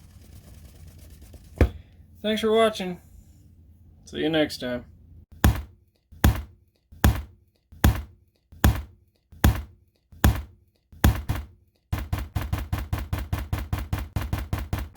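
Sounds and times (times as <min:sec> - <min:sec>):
sharp heavy knocks: 0:05.4 - 0:14.9.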